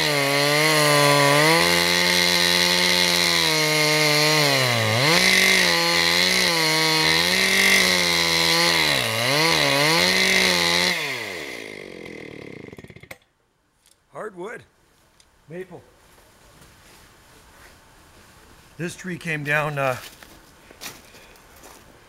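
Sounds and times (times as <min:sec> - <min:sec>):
chainsaw cutting log: 0:00.0 - 0:13.2.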